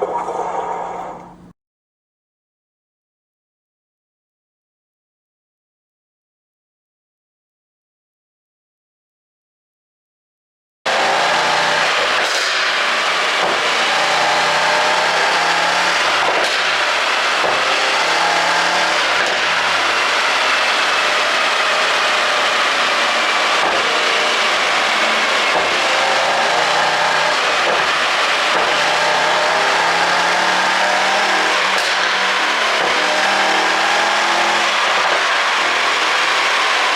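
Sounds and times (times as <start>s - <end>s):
car engine revving: 10.9s - 36.9s.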